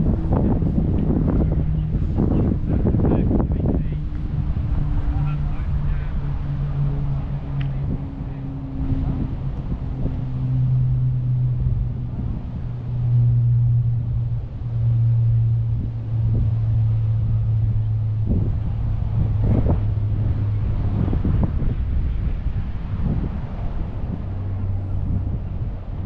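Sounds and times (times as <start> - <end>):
vehicle engine humming: 0.0 - 26.0.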